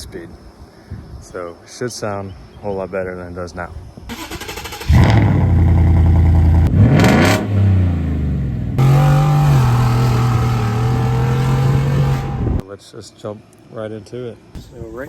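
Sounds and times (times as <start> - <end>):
engine revving: 4.2 - 12.6.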